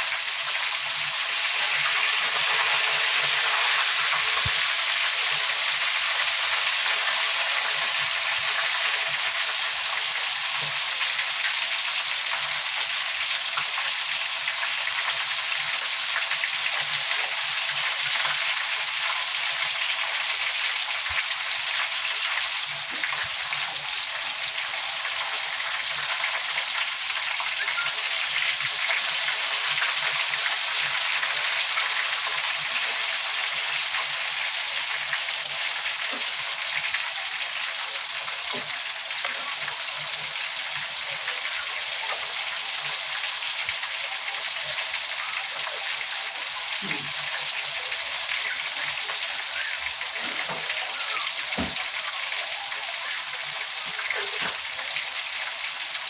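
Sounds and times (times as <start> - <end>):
chicken frying in hot oil: 0.0 - 56.0.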